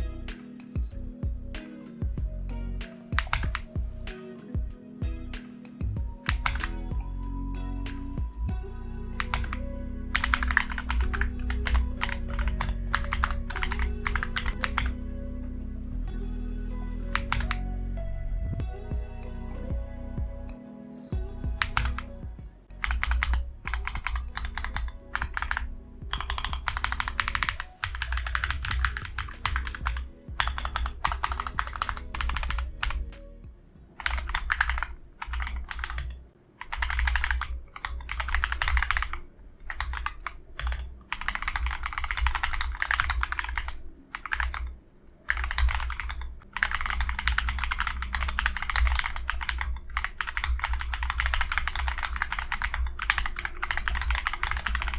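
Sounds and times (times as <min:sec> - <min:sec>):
mechanical keyboard key clicks: 0:02.8 - 0:03.7, 0:06.2 - 0:07.0, 0:09.2 - 0:15.0, 0:17.1 - 0:17.6, 0:21.6 - 0:22.1, 0:22.8 - 0:33.1, 0:34.0 - 0:54.9.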